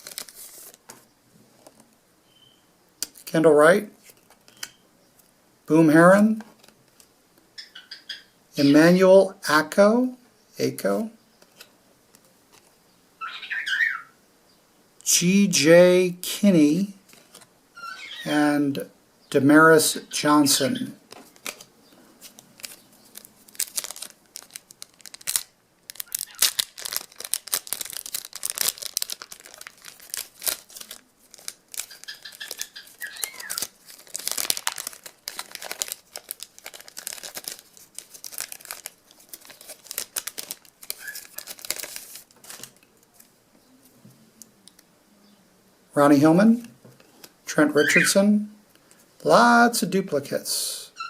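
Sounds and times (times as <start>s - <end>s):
card pack wrappers crinkling and tearing: 0.0s - 0.9s, 21.2s - 43.3s.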